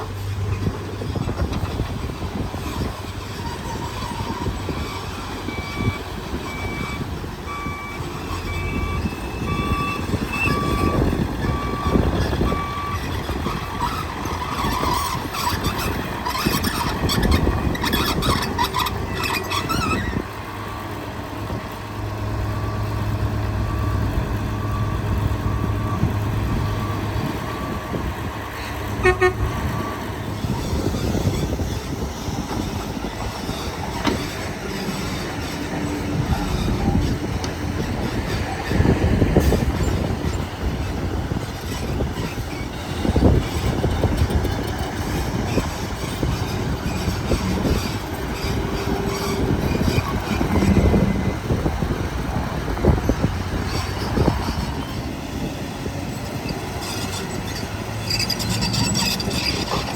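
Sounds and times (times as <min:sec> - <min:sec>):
heavy diesel machinery running: 0:00.0 - 0:59.9
reversing alarm beeping: 0:05.0 - 0:13.0.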